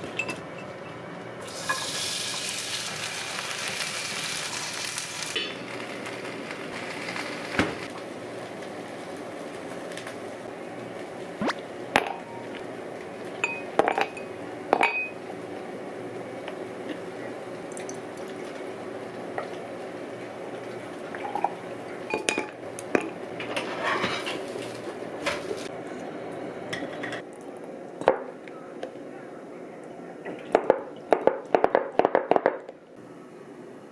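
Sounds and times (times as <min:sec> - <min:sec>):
dishes and utensils clinking: 0:01.6 - 0:02.0, 0:21.2 - 0:24.5.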